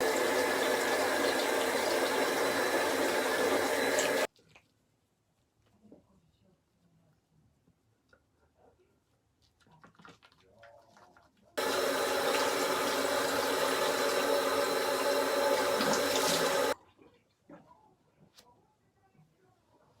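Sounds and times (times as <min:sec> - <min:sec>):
water running from a tap: 0:00.0 - 0:04.3, 0:11.6 - 0:16.8.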